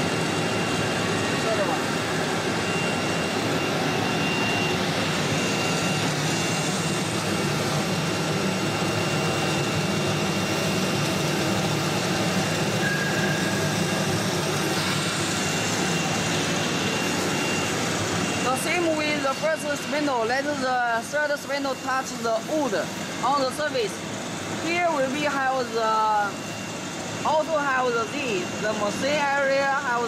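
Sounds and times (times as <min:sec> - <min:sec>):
cnc router machine noise: 0:00.0 - 0:30.0
high steady whine: 0:00.0 - 0:30.0
short beep: 0:02.6 - 0:06.6, 0:12.8 - 0:13.7.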